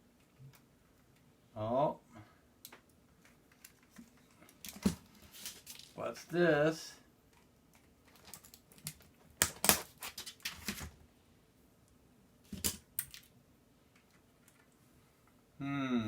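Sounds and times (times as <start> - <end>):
keyboard parts clicking and clattering: 2.7 - 6.0, 7.3 - 10.9, 12.5 - 13.3.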